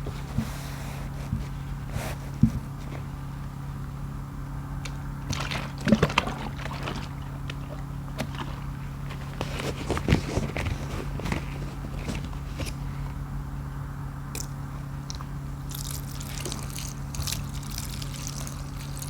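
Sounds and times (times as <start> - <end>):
wet sponges squishing in water: 5.3 - 11.9.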